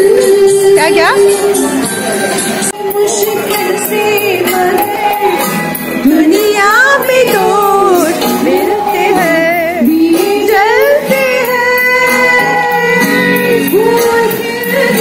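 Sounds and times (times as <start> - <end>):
song with sung melody: 0.0 - 15.0.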